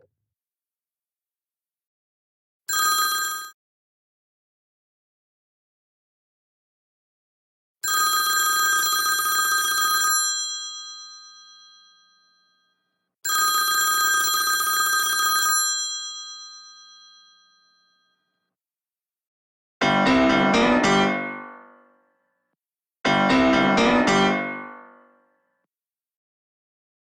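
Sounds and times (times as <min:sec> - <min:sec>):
telephone bell ringtone: 0:02.7 - 0:03.6, 0:07.8 - 0:18.4.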